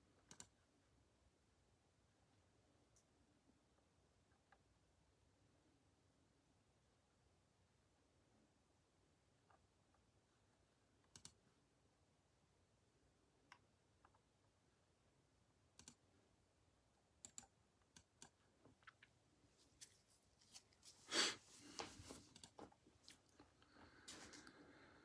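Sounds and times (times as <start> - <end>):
faint small clicks: 0.2 - 0.5, 11.0 - 11.4, 15.8 - 16.0
soft handling noise: 18.6 - 24.6.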